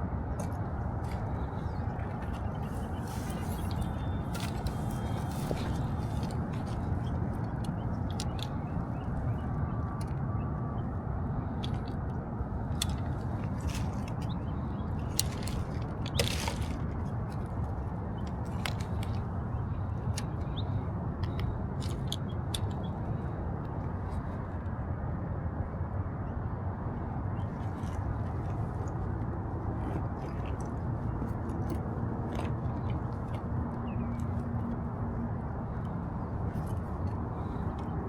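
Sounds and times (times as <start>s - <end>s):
steady low rumble: 0.0s - 38.0s
litter crunching and crinkling: 0.4s - 8.7s, 12.8s - 19.3s, 27.7s - 33.5s.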